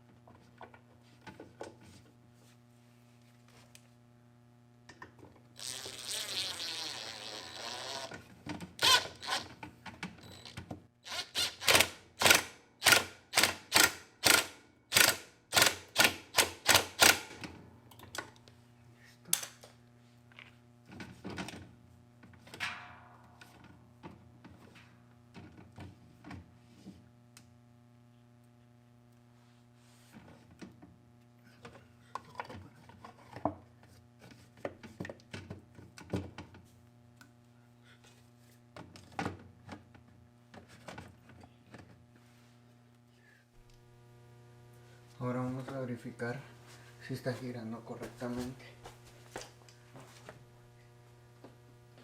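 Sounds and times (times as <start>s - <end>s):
steady low hum: 41.2s - 52.0s.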